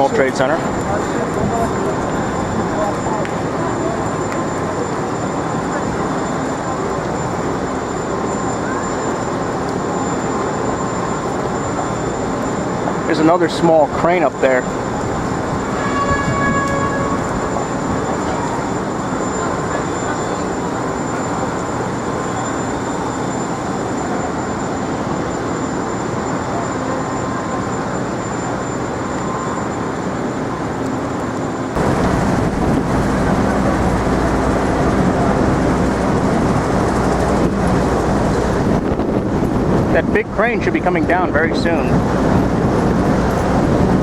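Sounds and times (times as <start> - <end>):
city street traffic: 0.0 - 44.0
wind buffeting microphone: 31.8 - 44.0.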